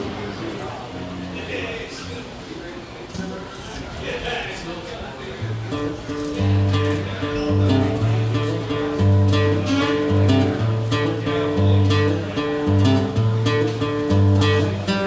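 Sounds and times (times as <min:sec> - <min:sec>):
acoustic guitar strumming chords: 0:05.4 - 0:15.0.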